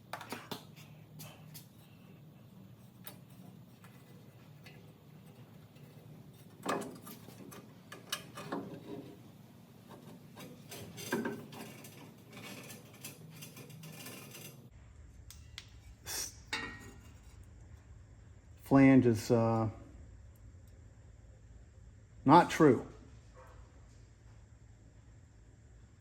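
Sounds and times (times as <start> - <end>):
low steady hum: 0.0 - 26.0
metal tools clanking and scraping: 2.8 - 9.2, 9.8 - 14.7, 15.8 - 17.5.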